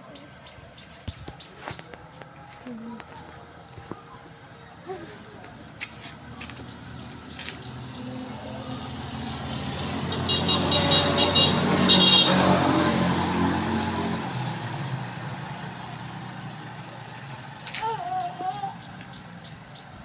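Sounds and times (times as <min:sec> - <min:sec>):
vehicle engine passing by: 0:06.0 - 0:20.0.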